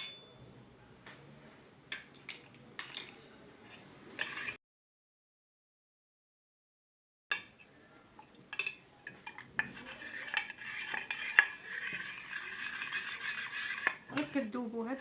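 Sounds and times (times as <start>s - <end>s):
spoon scraping vessel: 3.7s - 4.6s, 9.2s - 14.5s.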